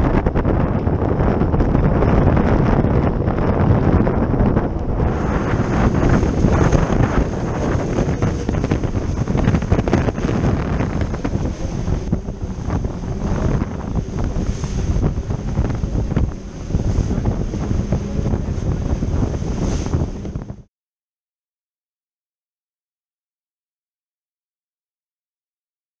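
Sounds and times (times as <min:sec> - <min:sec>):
wind buffeting microphone: 0:00.0 - 0:20.7
water rushing past hull: 0:00.1 - 0:20.7.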